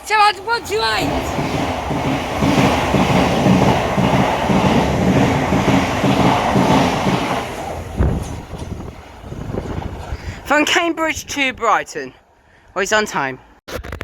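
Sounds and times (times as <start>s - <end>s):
train passing at speed: 0.0s - 11.2s
wheels clattering over rails: 0.3s - 10.2s.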